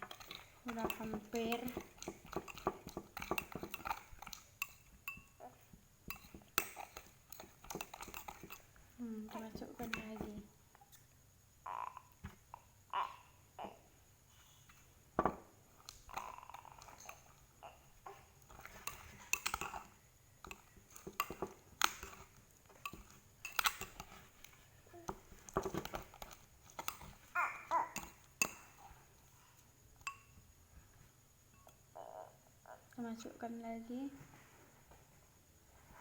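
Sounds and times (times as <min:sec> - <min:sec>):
stirrer clinking on container: 0:00.0 - 0:10.5, 0:15.2 - 0:17.4, 0:18.4 - 0:29.0, 0:29.9 - 0:30.3.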